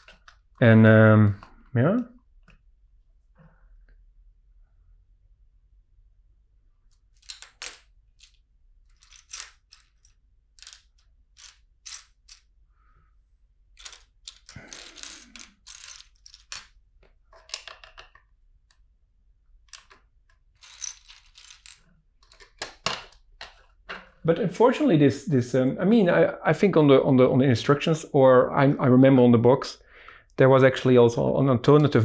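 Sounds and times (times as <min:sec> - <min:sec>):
plastic bricks clicking and clattering: 0:07.0 - 0:12.5, 0:13.8 - 0:18.8, 0:19.6 - 0:23.8.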